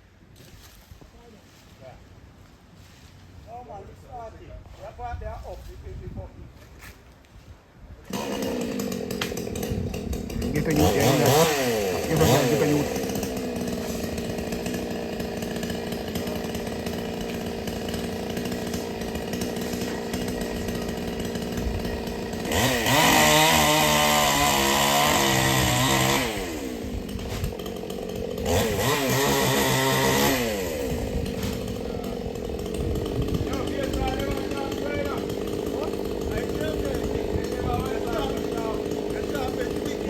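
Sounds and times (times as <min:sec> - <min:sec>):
chainsaw idling and revving: 0:08.1 - 0:40.0.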